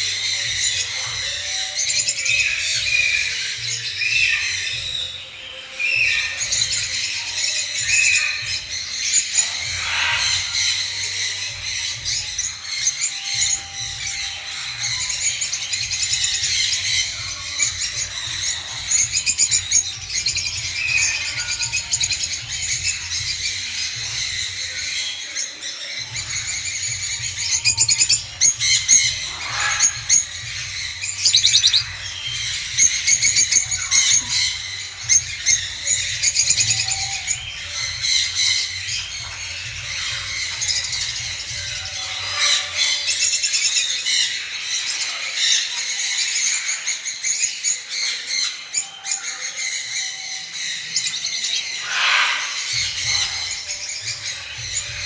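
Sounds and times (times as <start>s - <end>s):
parrots chattering and chirping: 0.0s - 55.0s.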